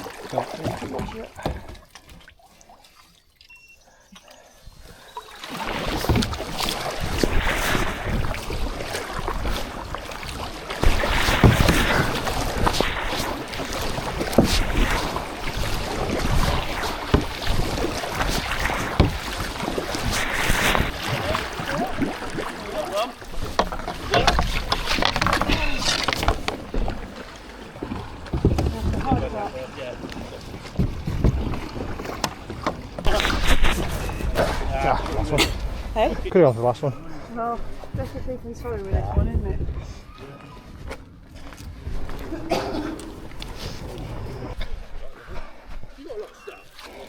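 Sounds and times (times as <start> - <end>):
paddle splashing water: 0.0 - 47.0
wind buffeting microphone: 28.2 - 40.1.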